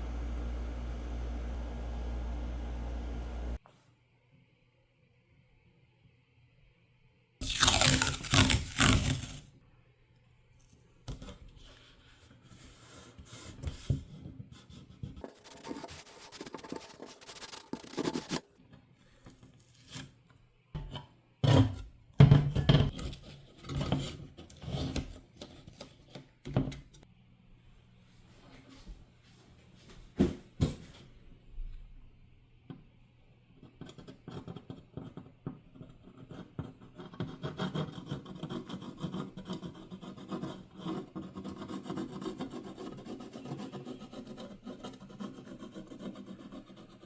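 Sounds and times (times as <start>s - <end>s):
hand scraping and rubbing: 11.6s - 20.2s.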